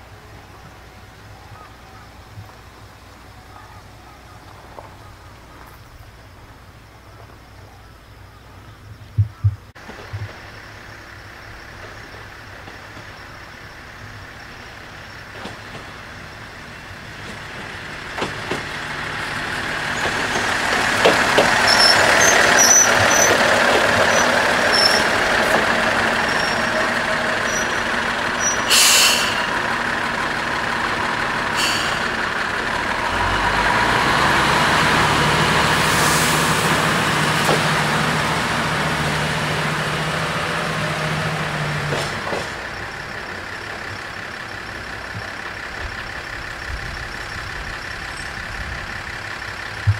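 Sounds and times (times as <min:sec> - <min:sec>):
diesel railcar engine running: 0:00.0 - 0:49.9
high wheel squeaks: 0:14.4 - 0:38.4, 0:40.5 - 0:49.8
air-brake hiss: 0:28.4 - 0:29.6, 0:31.5 - 0:32.2, 0:35.8 - 0:36.7.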